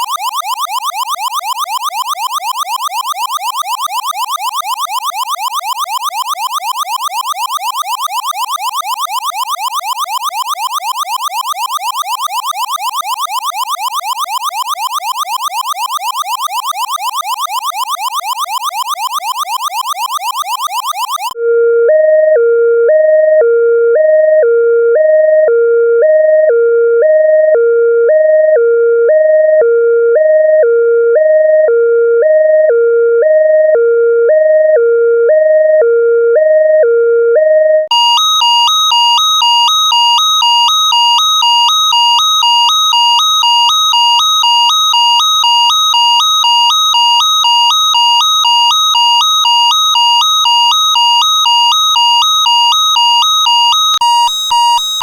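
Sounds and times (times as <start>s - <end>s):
harsh electronic alarm warbling: 0.0s - 21.4s, 37.8s - 55.0s
electronic hi-lo alarm: 0.0s - 21.5s, 37.8s - 55.0s.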